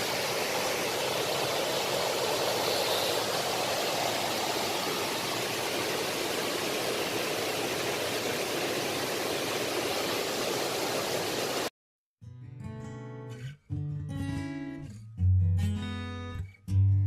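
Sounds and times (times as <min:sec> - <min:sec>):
stream rushing over rocks: 0:00.0 - 0:11.7.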